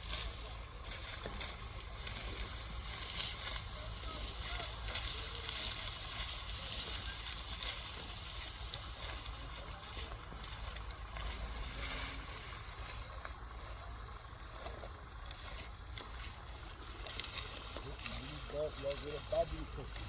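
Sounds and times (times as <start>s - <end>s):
dry wheat stalks rustling: 0.0s - 20.0s.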